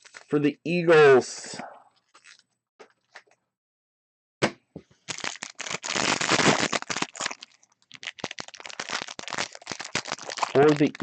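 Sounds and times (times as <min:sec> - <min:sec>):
sharp crack of packaging: 0:05.1 - 0:11.0
trading card wrapper tearing: 0:05.1 - 0:11.0.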